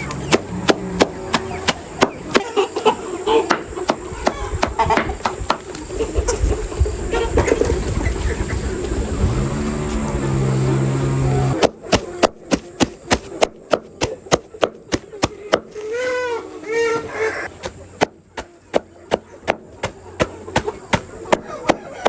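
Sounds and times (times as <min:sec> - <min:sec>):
chopping strikes on wood: 0:00.3 - 0:02.5, 0:11.6 - 0:15.8, 0:18.0 - 0:22.0.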